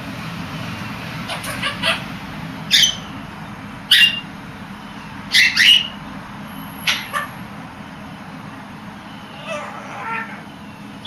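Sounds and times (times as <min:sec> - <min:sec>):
bird coughing: 0:01.3 - 0:02.1.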